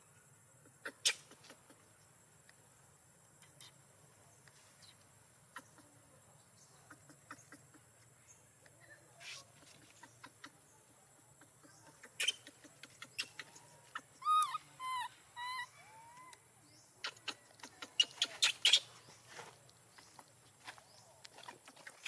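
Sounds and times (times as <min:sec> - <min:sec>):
baby monkey squeaky calls: 0:11.6 - 0:16.4, 0:17.0 - 0:19.0.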